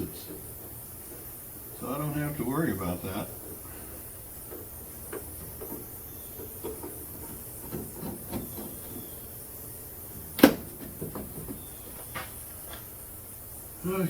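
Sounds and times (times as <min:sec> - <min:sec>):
steady hiss: 0:00.0 - 0:14.0
hand tools scraping and clicking: 0:04.5 - 0:09.1.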